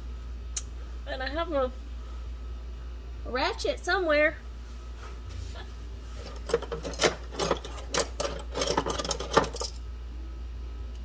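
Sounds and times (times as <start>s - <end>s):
metal tools clinking: 6.2s - 9.8s.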